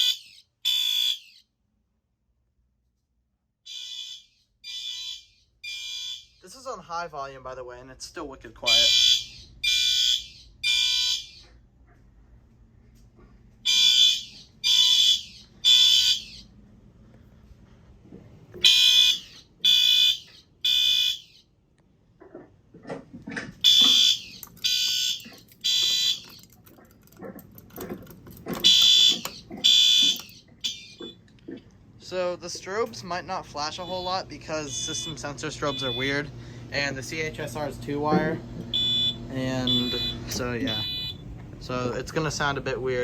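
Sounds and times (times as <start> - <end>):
fire alarm beeps: 0.0 - 1.5, 3.7 - 6.5, 8.6 - 11.5, 13.6 - 16.5, 18.6 - 21.5, 23.6 - 26.6, 28.5 - 31.2, 33.6 - 36.3, 38.7 - 41.3.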